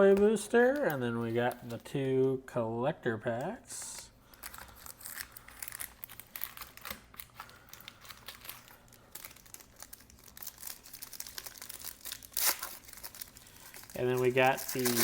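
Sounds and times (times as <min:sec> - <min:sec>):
foil packs crinkling: 0:03.9 - 0:15.0.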